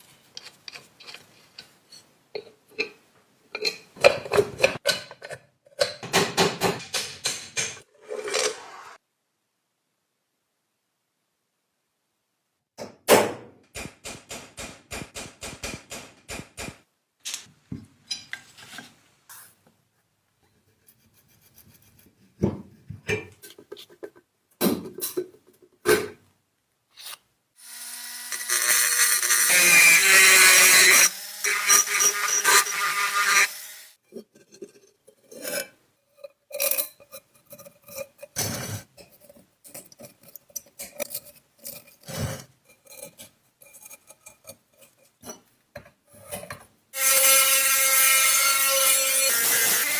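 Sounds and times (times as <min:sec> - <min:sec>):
clicks taps and scraping: 0:00.0 - 0:08.5, 0:21.6 - 0:26.3, 0:34.1 - 0:46.8.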